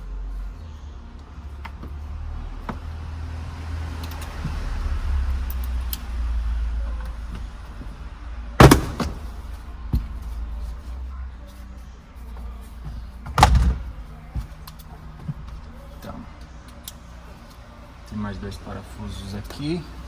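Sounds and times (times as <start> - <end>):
sharp knock: 8.6 - 9.4.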